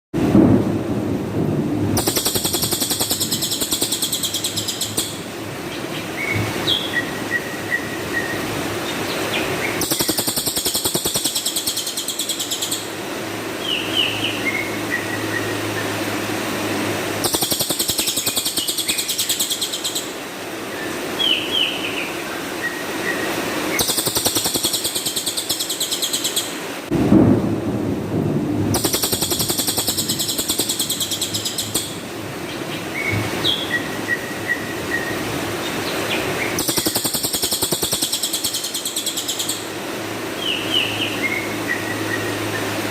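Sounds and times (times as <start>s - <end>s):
songbird rapid trilled calls: 2.0s - 5.3s, 9.3s - 12.9s, 17.2s - 20.2s, 23.7s - 26.5s, 28.8s - 32.0s, 36.1s - 39.6s.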